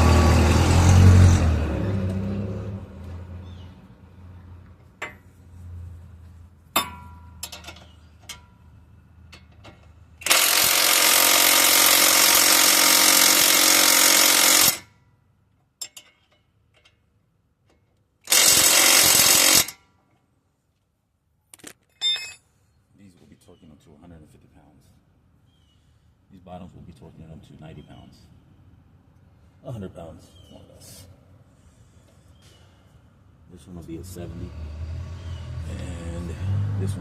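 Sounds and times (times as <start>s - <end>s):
impact wrench hammering bolts: 6.8s - 8.4s, 9.3s - 14.9s, 15.8s - 17.0s, 17.7s - 19.8s, 21.6s - 22.4s
metallic clinks of tools: 21.9s - 22.5s.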